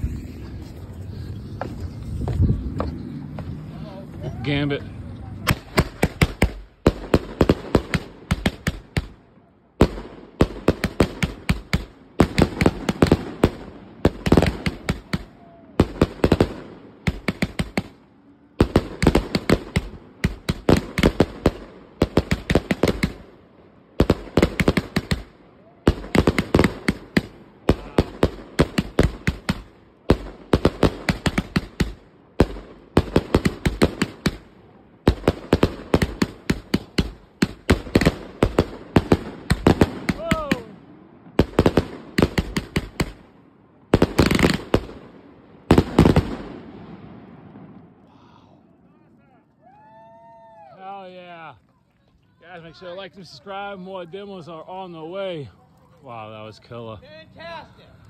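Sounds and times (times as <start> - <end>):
firework cake bangs and cracks: 25.9 - 34.5.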